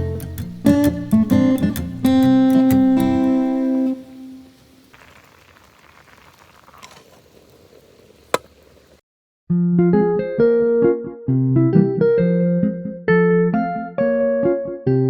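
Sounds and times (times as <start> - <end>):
strummed acoustic guitar: 0.0 - 4.0
faint steady hiss: 0.0 - 9.0.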